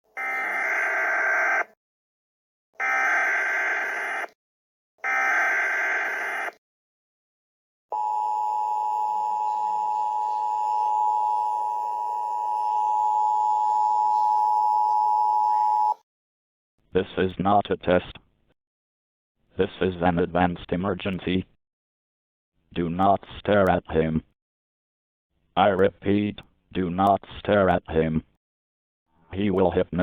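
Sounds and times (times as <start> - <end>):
two-tone attention signal: 8.0 - 16.0.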